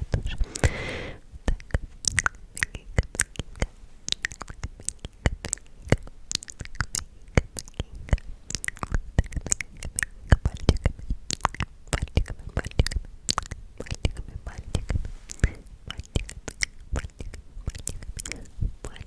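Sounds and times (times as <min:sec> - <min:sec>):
wet mouth clicks and smacks: 0:01.4 - 0:19.0.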